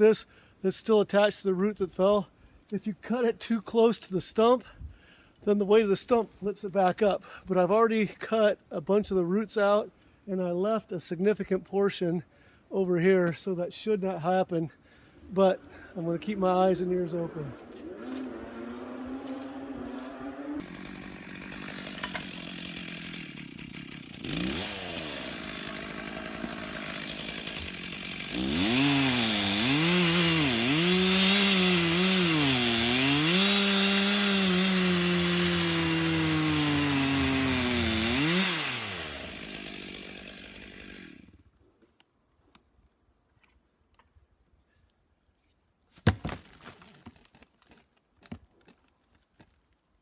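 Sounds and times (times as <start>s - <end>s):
chainsaw sawing into log: 15.2s - 41.4s.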